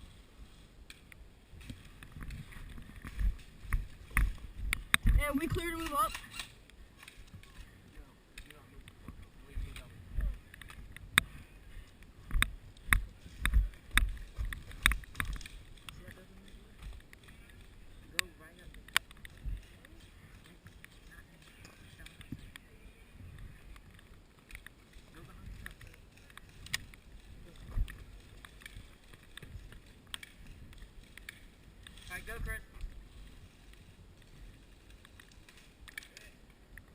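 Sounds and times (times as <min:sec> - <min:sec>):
footsteps walking: 0:00.0 - 0:07.9, 0:08.8 - 0:18.1
light clicks and knocks of gear: 0:00.5 - 0:36.9.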